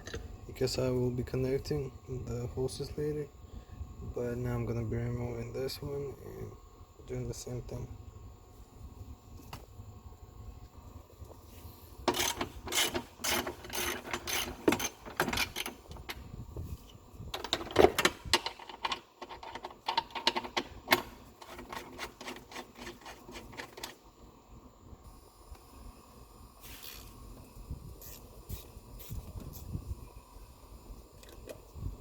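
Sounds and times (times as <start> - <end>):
metal parts clicking and rattling: 12.0 - 16.2, 17.3 - 24.0.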